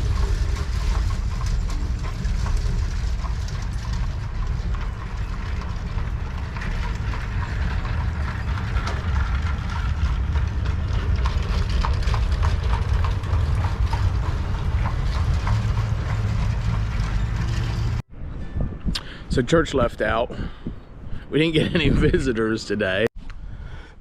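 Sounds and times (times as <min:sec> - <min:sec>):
horse hooves clip-clopping: 0:00.0 - 0:18.0
low rumble of rolling vehicle: 0:00.0 - 0:22.2.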